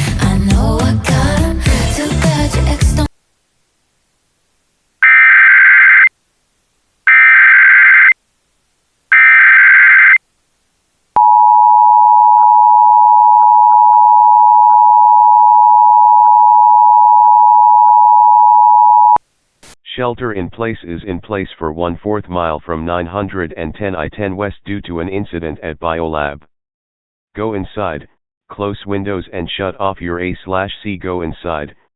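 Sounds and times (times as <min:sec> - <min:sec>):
digital data tone bursts: 0:09.1 - 0:10.2
two-tone attention signal beep: 0:11.2 - 0:19.2.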